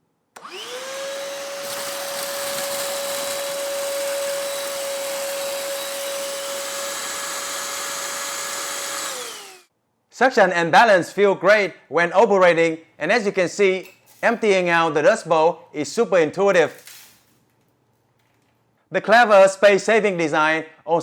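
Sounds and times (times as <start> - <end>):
hand vacuum motor whining: 0.4 - 9.7.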